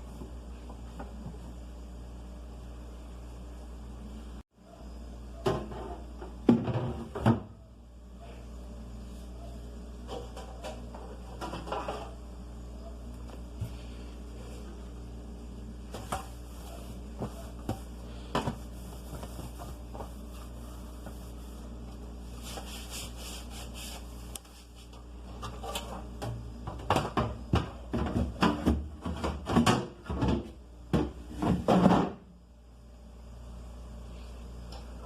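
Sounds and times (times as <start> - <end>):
low steady hum: 0.0 - 35.0
plastic fridge parts knocking: 26.7 - 32.2.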